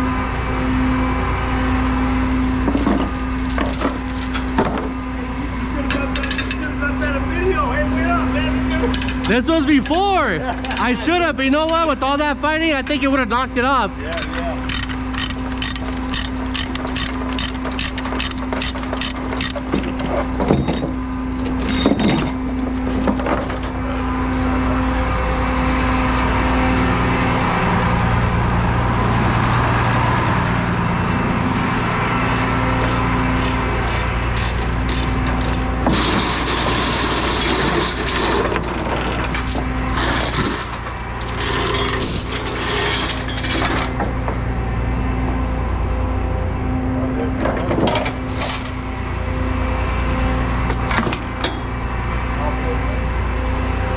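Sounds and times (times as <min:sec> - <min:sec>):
engine running: 0:00.0 - 0:53.9
metallic clinks and rattles: 0:02.2 - 0:05.0, 0:05.9 - 0:06.7, 0:14.1 - 0:23.8, 0:31.1 - 0:44.5, 0:47.4 - 0:48.8, 0:50.7 - 0:51.6.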